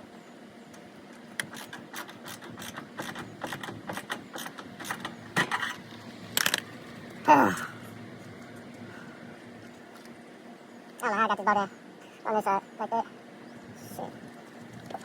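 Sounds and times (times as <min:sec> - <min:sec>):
loud metallic clicks: 0:01.4 - 0:05.8.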